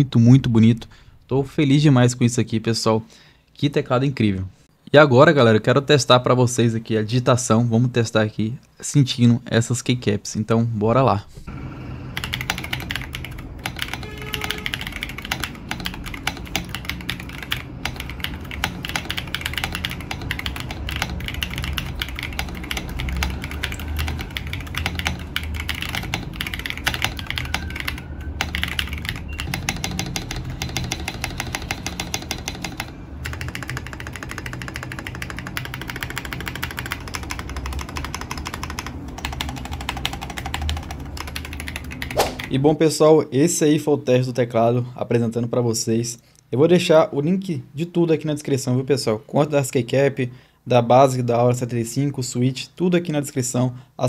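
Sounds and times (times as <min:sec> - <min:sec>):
mechanical keyboard typing: 0:12.2 - 0:42.6.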